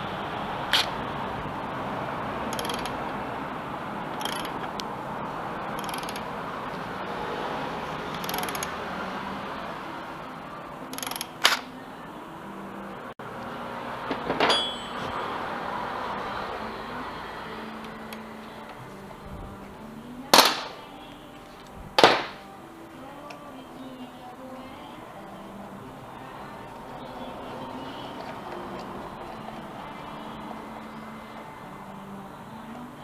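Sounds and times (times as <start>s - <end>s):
metallic clicks and clanks: 2.5s - 3.1s, 4.1s - 4.9s, 5.8s - 6.3s, 8.1s - 8.8s, 10.9s - 11.7s.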